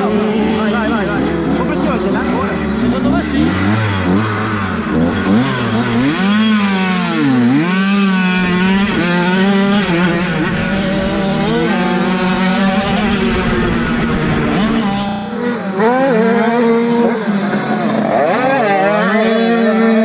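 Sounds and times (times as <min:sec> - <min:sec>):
motorcycle engines revving: 0:00.0 - 0:20.0.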